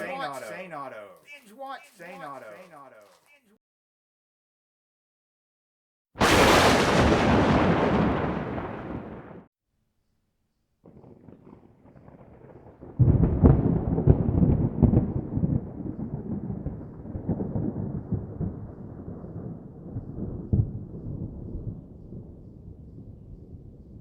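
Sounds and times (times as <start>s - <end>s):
deep rumbling crash: 6.2s - 9.4s.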